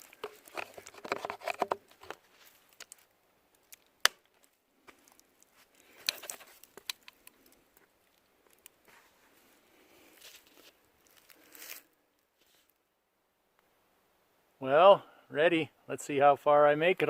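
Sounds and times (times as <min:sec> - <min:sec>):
plastic wrapper crinkling: 0:00.0 - 0:08.9, 0:10.1 - 0:12.6.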